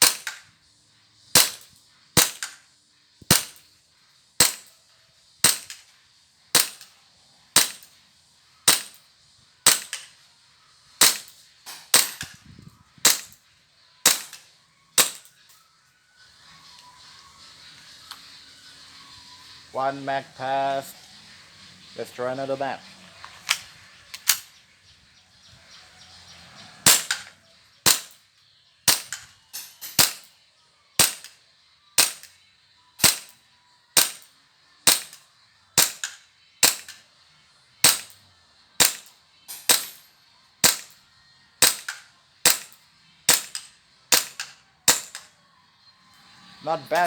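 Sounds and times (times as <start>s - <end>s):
airsoft pistol shots: 0.0s - 0.4s, 1.4s - 2.6s, 3.3s - 3.6s, 4.4s - 4.7s, 5.4s - 5.8s, 6.6s - 6.9s, 7.6s - 7.9s, 8.7s - 9.0s, 9.7s - 10.1s, 11.0s - 12.4s, 13.0s - 13.4s, 14.0s - 14.4s, 15.0s - 15.4s, 26.8s - 28.2s, 28.9s - 30.3s, 31.0s - 31.4s, 32.0s - 32.3s, 33.0s - 33.4s, 34.0s - 34.3s, 34.9s - 35.2s, 35.8s - 37.0s, 37.8s - 38.2s, 38.8s - 39.1s, 39.7s - 40.0s, 40.6s - 41.0s, 41.6s - 45.3s.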